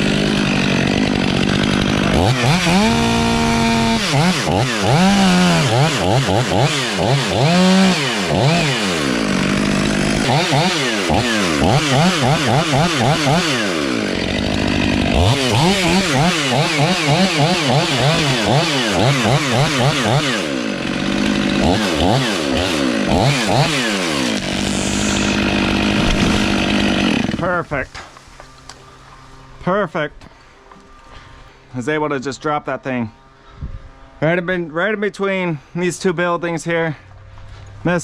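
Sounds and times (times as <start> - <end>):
chainsaw cutting wood: 0.0 - 28.7.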